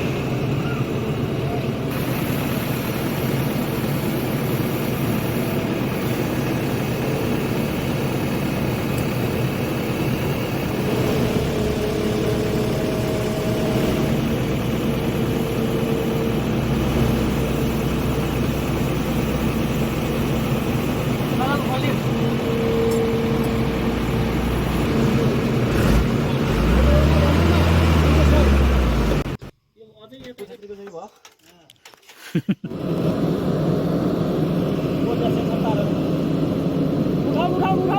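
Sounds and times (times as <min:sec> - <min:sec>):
high steady whine: 0:00.0 - 0:25.6
diesel engine rumbling: 0:00.0 - 0:29.5, 0:32.7 - 0:37.9.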